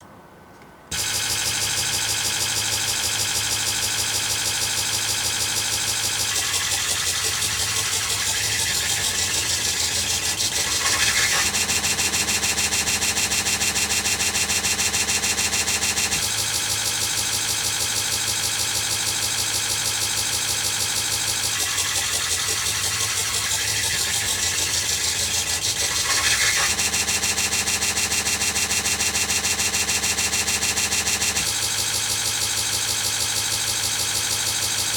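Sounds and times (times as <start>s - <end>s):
harsh buzzing pitched tone: 0.9s - 17.1s.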